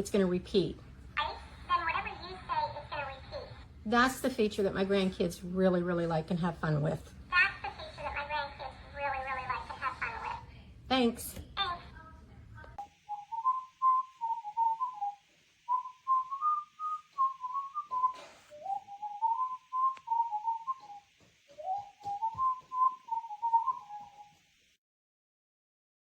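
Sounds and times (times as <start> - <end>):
faint hiss: 12.8 - 24.8
toy bird whistled tune: 15.8 - 24.4.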